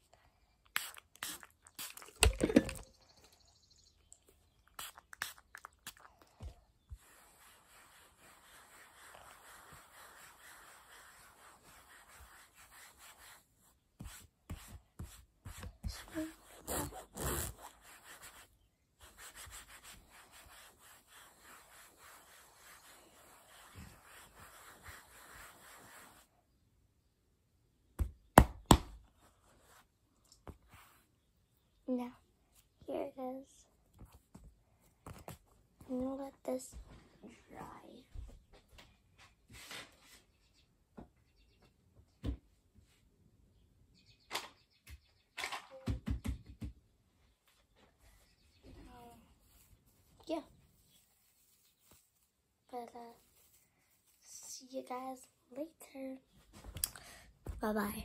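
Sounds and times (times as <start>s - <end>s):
hand scrubbing on computer mouse: 7.0s - 13.4s, 19.0s - 26.3s
rustling: 48.9s - 54.4s.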